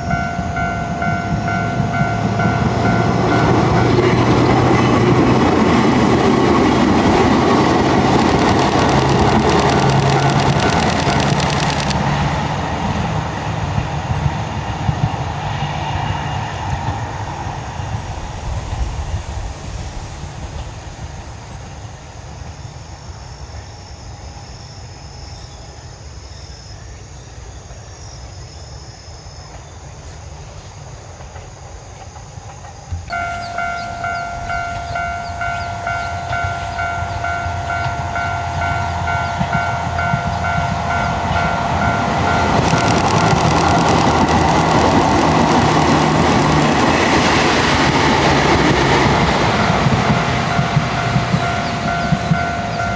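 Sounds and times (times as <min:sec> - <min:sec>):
electric train running: 0:00.0 - 0:12.6, 0:32.9 - 0:52.9
steady high hum: 0:07.5 - 0:12.0
train wheels clattering: 0:32.4 - 0:52.9.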